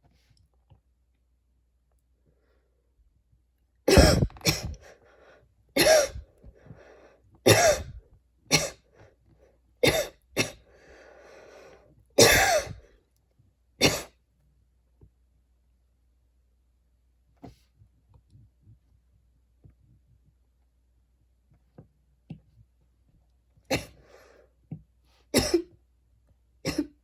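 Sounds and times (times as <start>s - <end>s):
person coughing hard: 3.9s - 4.8s, 5.8s - 6.2s, 7.5s - 8.8s, 9.8s - 10.6s, 12.2s - 12.8s, 13.8s - 14.1s, 23.7s - 24.0s, 25.4s - 25.7s, 26.7s - 27.0s
rasping breath in: 4.0s - 5.5s, 6.1s - 7.2s, 10.6s - 11.9s.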